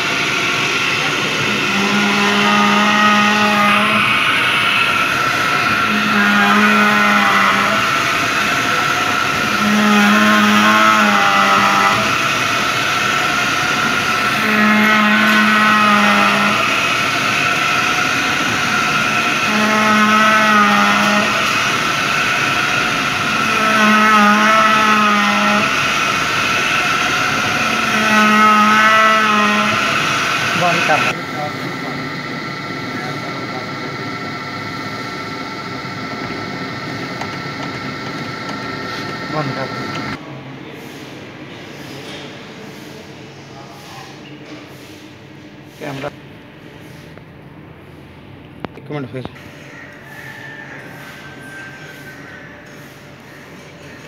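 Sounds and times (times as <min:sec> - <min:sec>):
lathe running: 0:00.0 - 0:40.2
low hum: 0:00.0 - 0:40.2.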